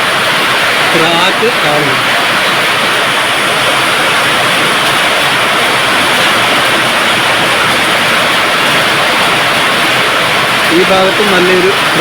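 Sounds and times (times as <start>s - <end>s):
loud rushing hiss: 0.0s - 12.0s.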